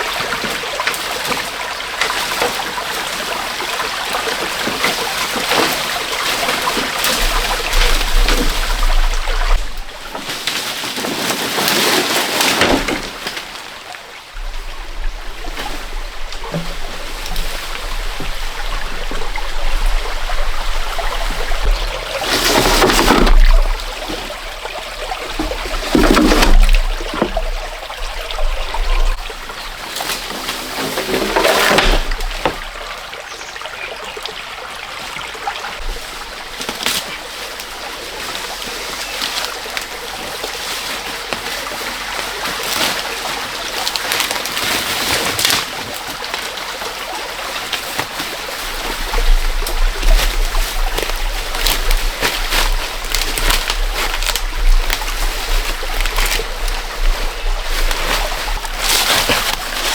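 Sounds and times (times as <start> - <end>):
water trickling and splashing: 0.0 - 59.9.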